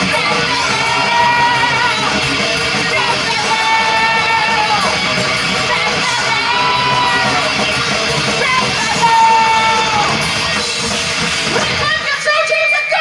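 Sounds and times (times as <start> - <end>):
rock band playing loud: 0.0 - 13.0.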